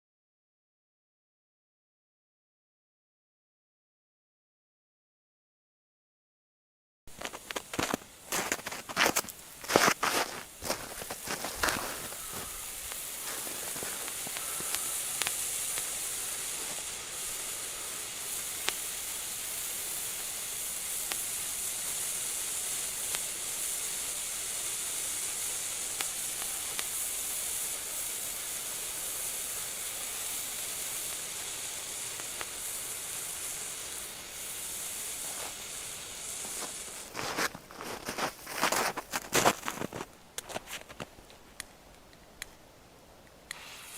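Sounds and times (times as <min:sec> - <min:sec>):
hand fountain firework hissing: 0:07.1 - 0:41.1, 0:43.4 - 0:43.9.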